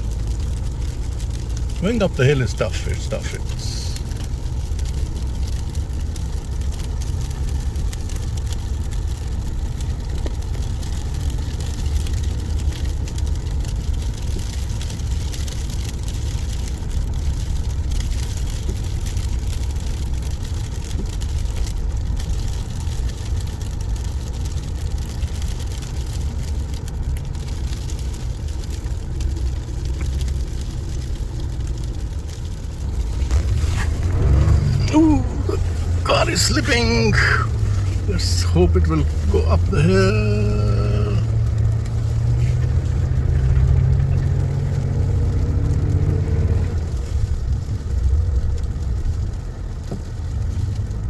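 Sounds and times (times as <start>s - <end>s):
car engine rumbling: 0.0s - 51.0s
tyres on snow: 32.8s - 47.0s.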